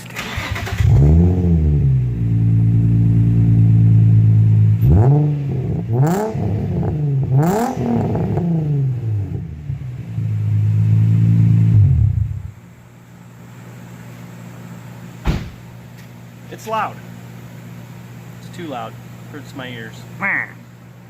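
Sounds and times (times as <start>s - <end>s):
car engine idling and revving: 0.0s - 15.2s.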